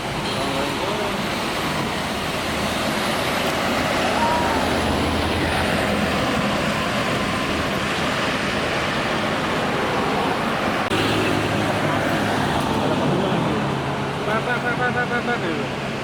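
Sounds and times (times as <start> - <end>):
traffic noise: 0.0 - 16.0.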